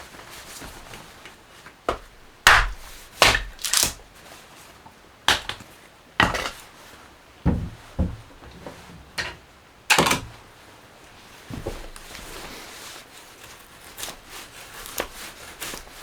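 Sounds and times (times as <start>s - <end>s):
wood chopping and splitting: 1.9s - 4.0s, 5.3s - 5.6s.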